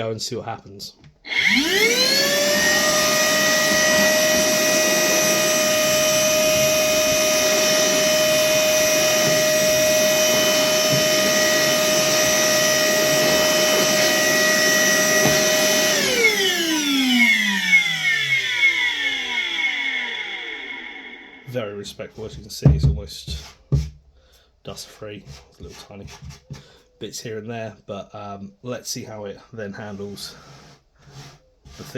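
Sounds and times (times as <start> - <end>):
vacuum whining: 1.2 - 21.6
vacuum motor winding down: 1.3 - 21.6.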